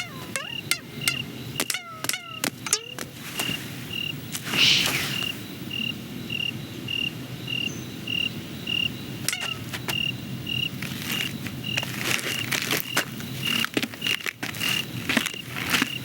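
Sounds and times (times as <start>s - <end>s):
cricket chirping: 0.0s - 16.0s
brief hiss: 4.5s - 5.4s.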